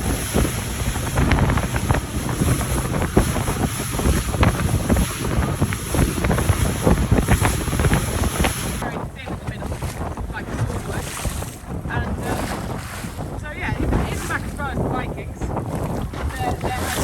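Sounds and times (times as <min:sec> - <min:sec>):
low rumble: 0:00.0 - 0:09.2
water splashing against hull: 0:00.0 - 0:17.0
wind buffeting microphone: 0:00.0 - 0:17.0.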